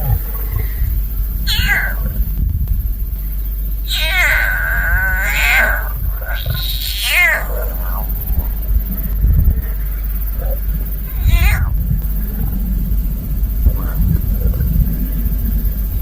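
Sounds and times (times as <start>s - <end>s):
low rumble: 0.0s - 16.0s
lion cub meowing: 1.4s - 2.2s, 3.8s - 8.7s, 10.3s - 11.9s.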